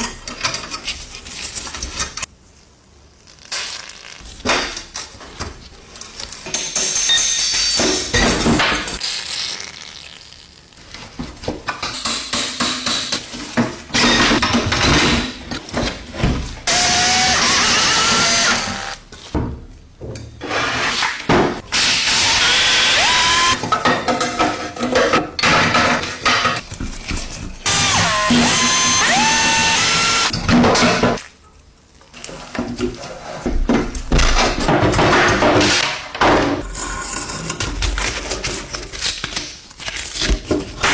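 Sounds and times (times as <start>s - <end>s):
knocks and clatter on metal parts: 11.5s - 16.8s, 23.5s - 31.2s, 32.7s - 36.6s
power drill running: 16.7s - 19.0s, 21.7s - 23.6s, 27.7s - 30.3s.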